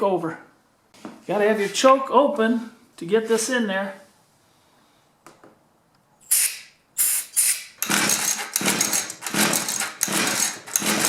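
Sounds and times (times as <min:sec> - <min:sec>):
starting fluid sprays: 0:06.3 - 0:11.0
engine turning over: 0:07.0 - 0:11.0
recoil starter cord pulled: 0:07.4 - 0:11.0.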